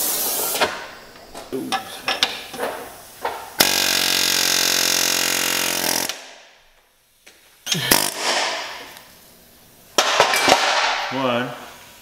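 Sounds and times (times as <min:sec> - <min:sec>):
pneumatic air hammer: 0:00.0 - 0:00.8, 0:03.6 - 0:06.4, 0:07.7 - 0:08.9.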